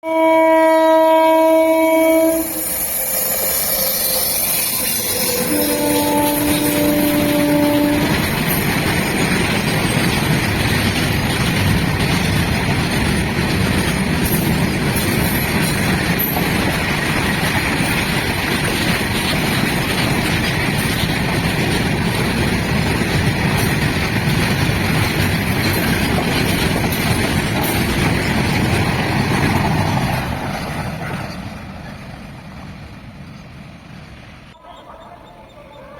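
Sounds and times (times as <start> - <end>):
locomotive horn blasts: 0.0 - 8.4
train rushing past: 0.0 - 35.9.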